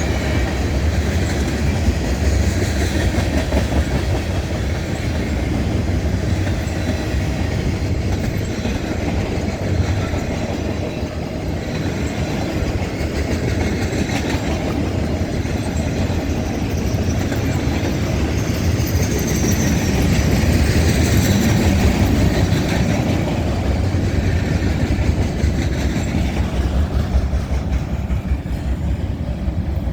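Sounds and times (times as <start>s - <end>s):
freight train heavy rumble: 0.0s - 29.9s
wheels clacking over rail joints: 0.0s - 29.9s
faint high wheel squeal: 15.5s - 22.1s.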